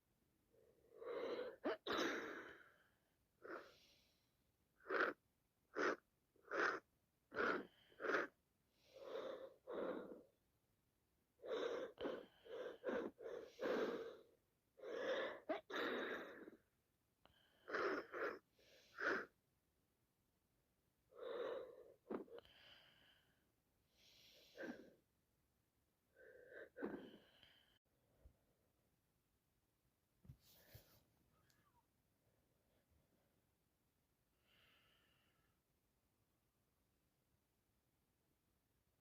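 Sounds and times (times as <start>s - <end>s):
breathing: 0.5s - 1.6s, 2.2s - 4.4s, 7.4s - 10.3s, 11.4s - 16.6s, 17.2s - 19.4s, 21.1s - 25.1s, 26.1s - 27.8s, 34.4s - 35.6s
person sneezing: 1.4s - 2.6s.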